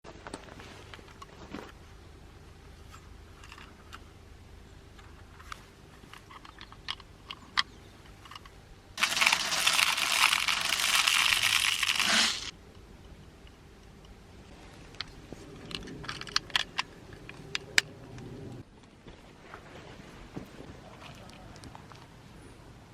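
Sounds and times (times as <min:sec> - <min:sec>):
grenade venting loud hiss: 0:09.0 - 0:12.5.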